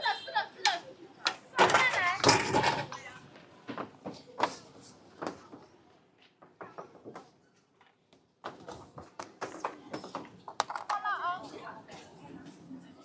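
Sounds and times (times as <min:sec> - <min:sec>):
kitchen utensils clattering: 0:01.6 - 0:03.0.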